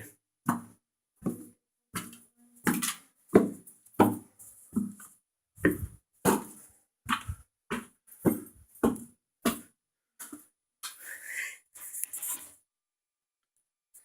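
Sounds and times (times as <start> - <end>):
person breathing hard: 10.9 - 11.8.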